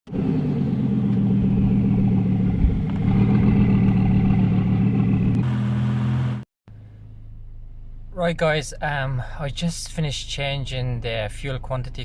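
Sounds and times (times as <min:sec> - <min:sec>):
diesel engine idling: 0:00.2 - 0:05.4.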